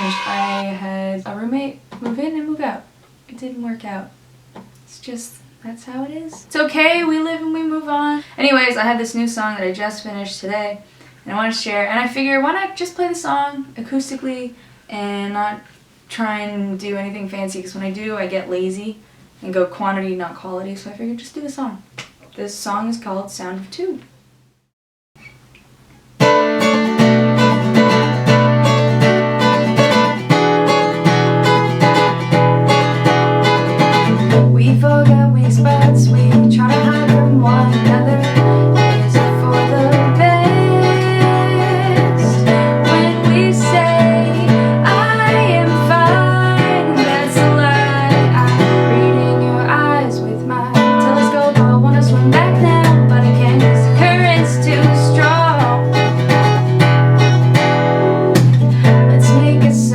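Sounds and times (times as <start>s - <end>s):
acoustic guitar playing: 0.0s - 0.8s, 26.2s - 59.9s
woman singing: 34.3s - 56.0s, 58.8s - 59.9s.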